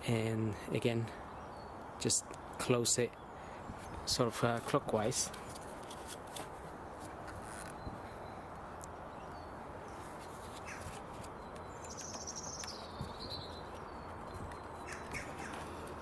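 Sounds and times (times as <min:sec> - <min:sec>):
background noise: 0:00.0 - 0:16.0
bird warbled call: 0:10.6 - 0:11.0, 0:14.8 - 0:15.8.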